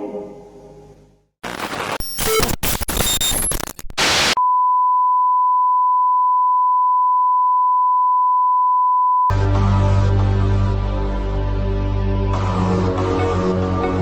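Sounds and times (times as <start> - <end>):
harsh broadcast static: 1.4 - 4.4
sine test tone: 4.4 - 9.3.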